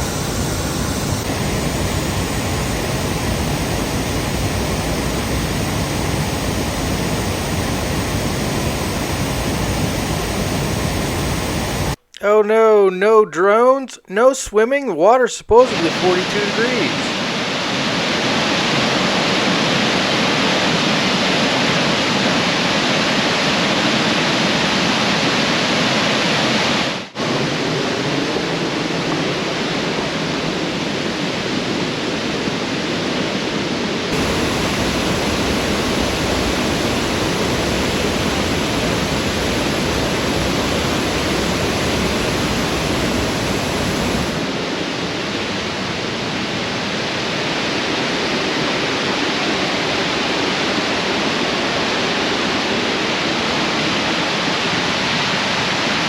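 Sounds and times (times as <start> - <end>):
waterfall roaring: 15.5 - 20.4, 34.1 - 56.0.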